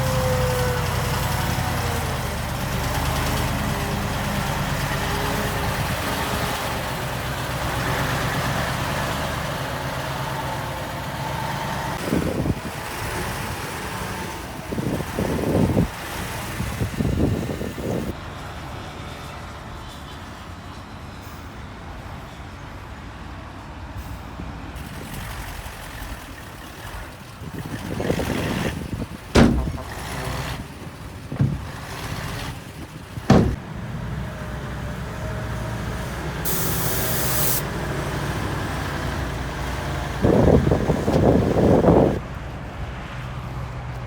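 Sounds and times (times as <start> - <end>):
diesel engine running: 0.0 - 18.2, 24.8 - 44.0
loud metal clanks: 29.3 - 32.4, 33.2 - 33.6
short burst of hiss: 36.5 - 37.6.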